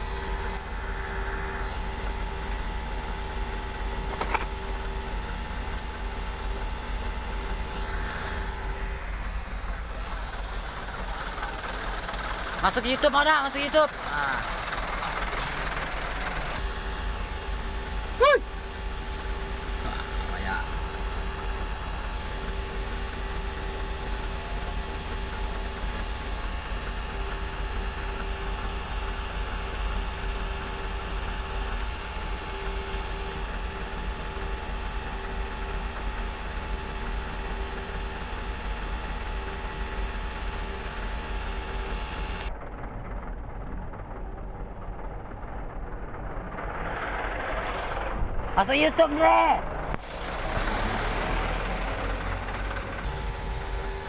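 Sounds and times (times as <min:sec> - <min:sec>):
high whine: 0:00.0 - 0:12.9, 0:16.5 - 0:42.8, 0:49.9 - 0:50.6, 0:53.0 - 0:54.0
mechanical drone: 0:00.0 - 0:13.1, 0:15.7 - 0:48.6, 0:49.7 - 0:54.0.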